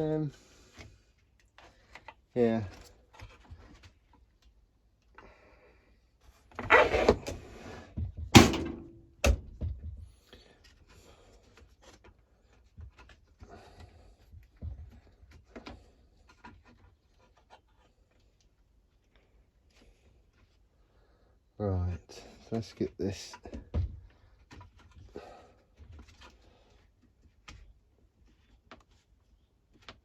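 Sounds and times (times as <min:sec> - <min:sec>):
scraping and rustling: 0:06.6 - 0:07.8.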